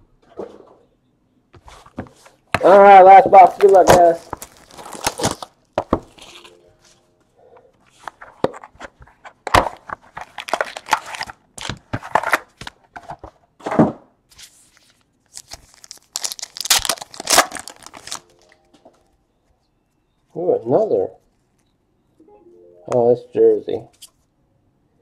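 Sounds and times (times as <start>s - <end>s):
card packaging tearing and crinkling: 2.6s - 6.6s, 8.0s - 13.0s, 14.4s - 18.4s.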